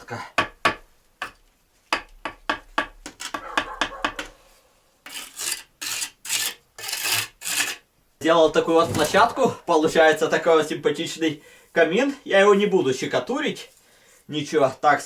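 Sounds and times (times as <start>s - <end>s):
trowel scraping on bricks: 5.0s - 7.9s.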